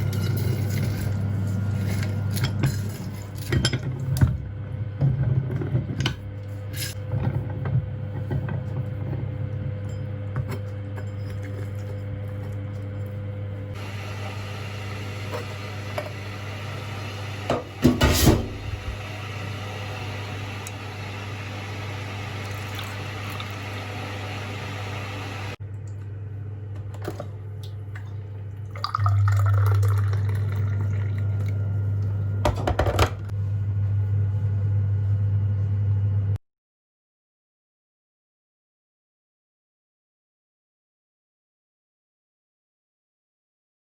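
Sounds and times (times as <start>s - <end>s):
water running: 13.7s - 25.6s, 27.1s - 32.3s.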